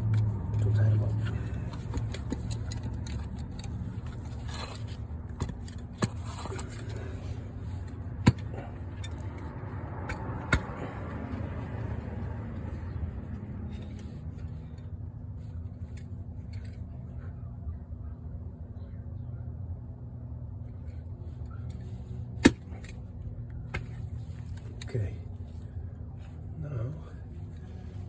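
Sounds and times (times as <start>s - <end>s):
tools clicking and knocking: 0.0s - 7.1s
steady low hum: 0.0s - 28.0s.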